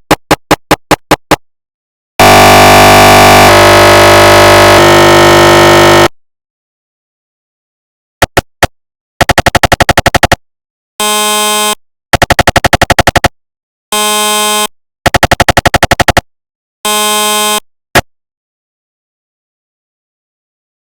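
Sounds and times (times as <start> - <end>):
mri scanner rapid knocking: 0.0 - 1.4, 8.2 - 10.4, 12.2 - 13.3, 15.1 - 16.2
mri scanner buzzing tones: 2.2 - 6.1.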